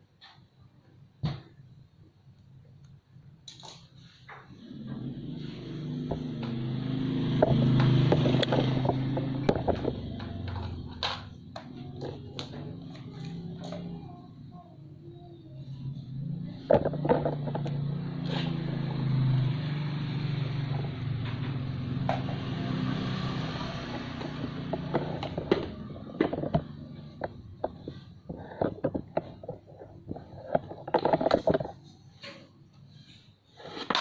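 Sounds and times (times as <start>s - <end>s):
low motor hum: 4.4s - 31.8s
clicks and knocks: 24.1s - 32.4s.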